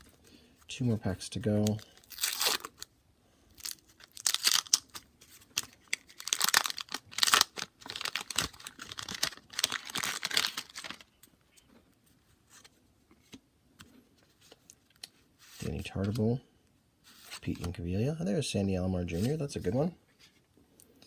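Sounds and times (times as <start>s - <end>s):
wax paper wrapper tearing and crinkling: 1.5s - 2.9s, 3.5s - 11.1s.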